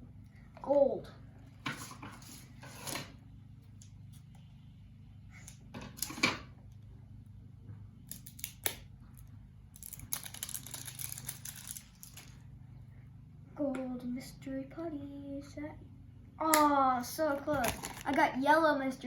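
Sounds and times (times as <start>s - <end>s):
plastic wrapper crinkling: 9.8s - 12.4s, 17.6s - 18.2s.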